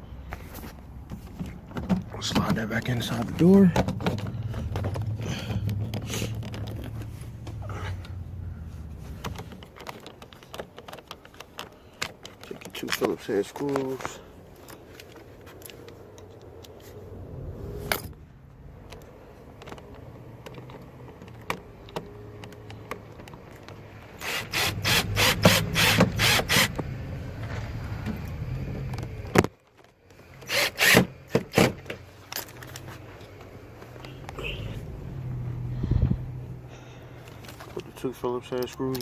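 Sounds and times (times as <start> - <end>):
screwdriver scraping on car door: 24.2 - 26.9, 30.4 - 31.8.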